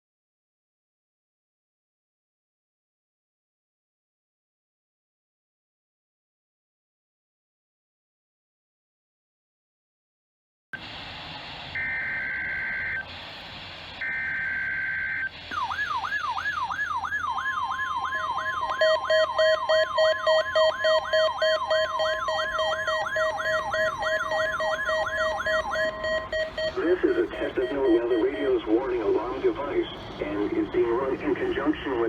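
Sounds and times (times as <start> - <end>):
steady warning alarm tone: 11.7 - 13.0, 14.0 - 30.9
shrill two-pitch data tones: 11.8 - 13.0, 14.0 - 16.9, 17.5 - 29.1
siren-like warble: 11.8 - 13.0, 14.0 - 29.5
low pulsing beep: 18.2 - 29.6.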